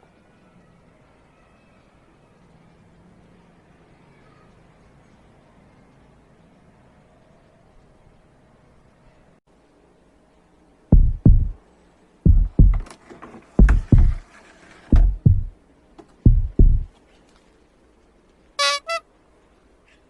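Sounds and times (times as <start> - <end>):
deep thumps like heartbeat: 10.9 - 11.6, 12.3 - 12.9, 13.6 - 14.2, 14.9 - 15.5, 16.3 - 16.9.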